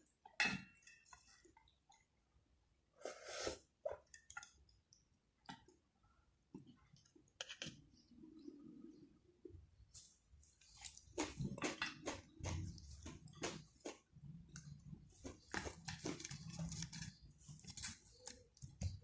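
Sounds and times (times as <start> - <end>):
person chewing and smacking: 10.6 - 19.0.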